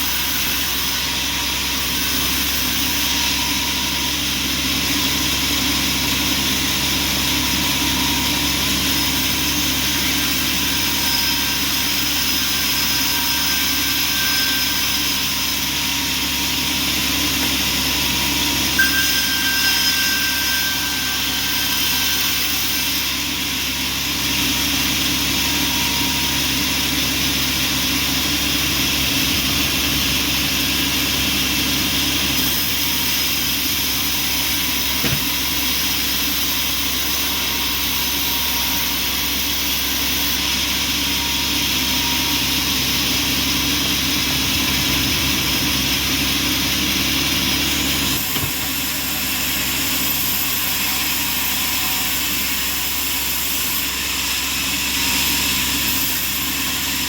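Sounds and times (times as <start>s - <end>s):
bandsaw drone and whine: 0.0s - 57.0s
brief knock: 35.0s - 35.3s.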